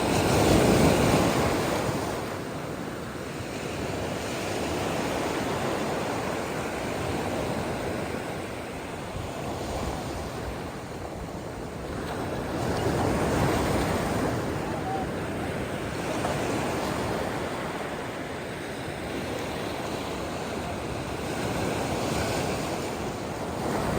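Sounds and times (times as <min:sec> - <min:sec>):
ocean surf breaking: 0:11.8 - 0:23.9.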